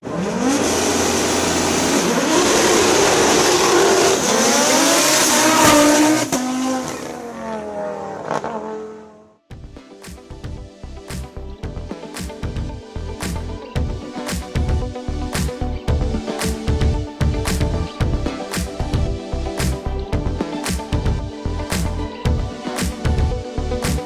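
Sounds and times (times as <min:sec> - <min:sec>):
rally car engine accelerating: 0:00.0 - 0:09.3
music with a beat: 0:09.5 - 0:24.0.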